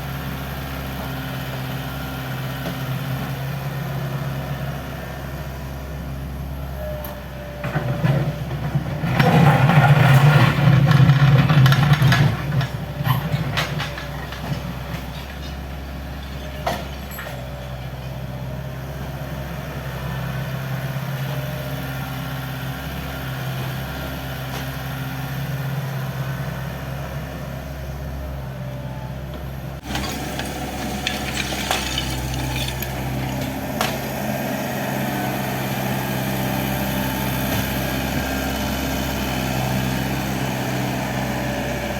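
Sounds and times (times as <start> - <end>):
excavator diesel engine running: 0.0 - 41.9
debris crashing and clattering: 7.8 - 17.7, 29.8 - 34.3.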